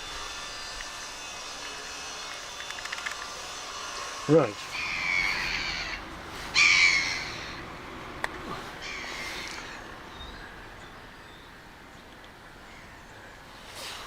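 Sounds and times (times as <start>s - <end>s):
bird calling harshly: 4.6s - 7.7s, 8.7s - 10.7s.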